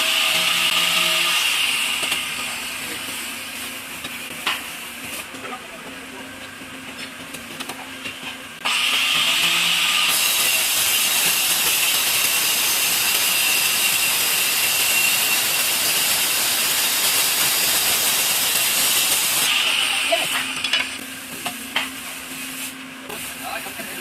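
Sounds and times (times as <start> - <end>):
tile saw blade grinding: 8.8 - 19.6.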